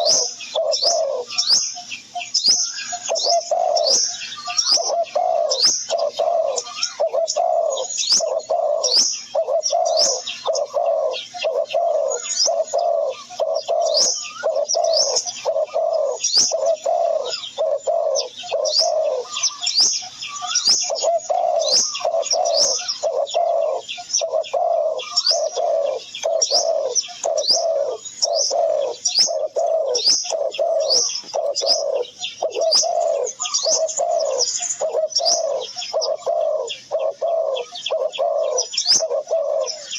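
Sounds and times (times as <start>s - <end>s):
bird cooing: 0.0s - 39.9s
high falling bird chirps: 0.0s - 39.9s.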